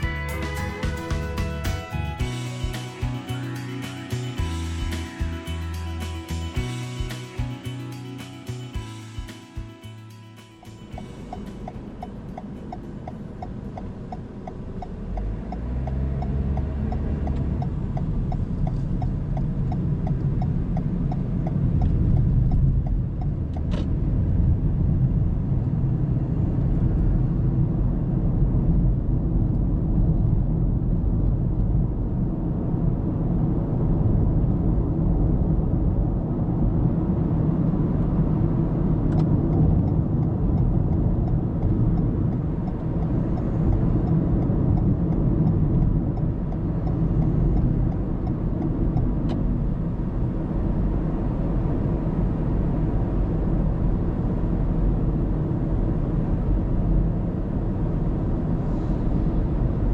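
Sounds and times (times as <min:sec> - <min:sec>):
regular ticking: 0:00.0 - 0:23.3
car engine and road noise: 0:00.0 - 0:59.9.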